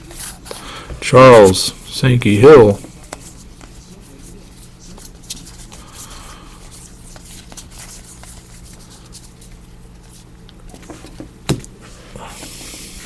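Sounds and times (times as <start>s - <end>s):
cards rustling and clicking: 2.7s - 11.8s.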